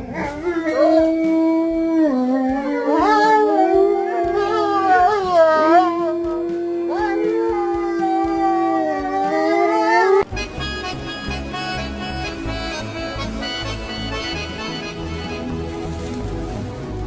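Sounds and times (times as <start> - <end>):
dog howling: 0.0 - 10.2
accordion music: 10.2 - 17.0.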